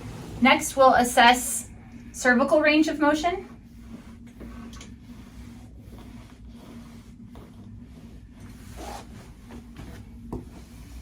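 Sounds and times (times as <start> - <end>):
steady low hum: 0.0 - 11.0
rubbing and rustling of clothing: 2.2 - 11.0.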